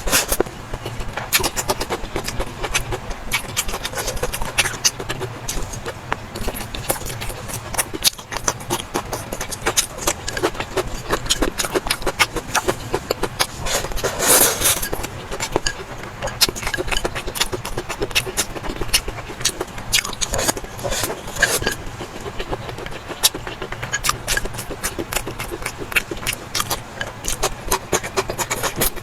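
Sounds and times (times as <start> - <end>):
person chewing and smacking: 0.0 - 29.0.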